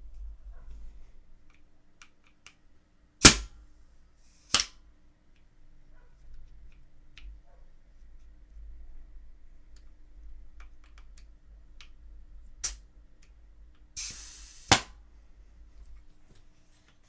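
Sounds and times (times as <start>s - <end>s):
paintball marker shot crack: 3.2s - 3.5s, 14.7s - 15.0s
short hiss of air: 14.0s - 15.0s.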